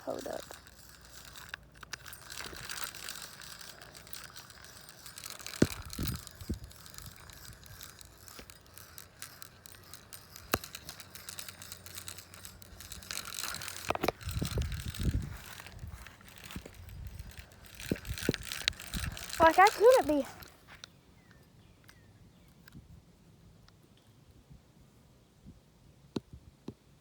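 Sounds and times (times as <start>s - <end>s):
fishing reel clicks: 0.0s - 20.6s
fishing reel rattling and scraping: 0.0s - 20.9s.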